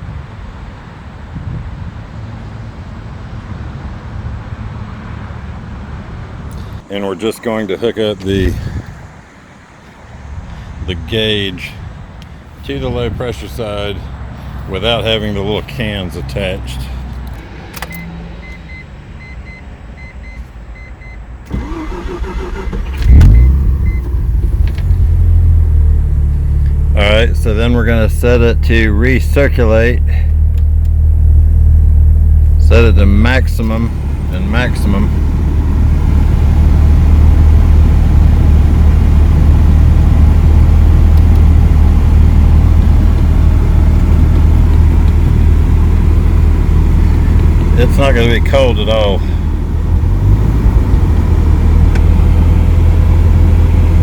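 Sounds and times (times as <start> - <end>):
engine starter cranking: 21.5 - 25.1
rotary engine idling: 21.5 - 54.0.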